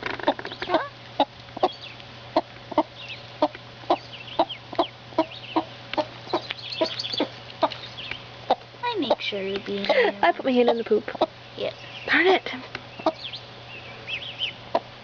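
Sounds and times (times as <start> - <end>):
hen clucking: 0.0 - 12.2, 12.9 - 15.0
faint high peeps of ducklings: 0.2 - 9.7, 13.0 - 14.9.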